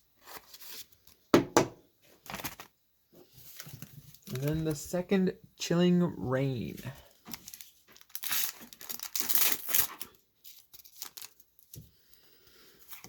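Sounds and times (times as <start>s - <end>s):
foil pack ripping open: 2.2s - 2.7s, 7.2s - 11.8s
wrapper crinkling: 2.2s - 2.7s, 3.4s - 4.9s, 6.6s - 11.8s.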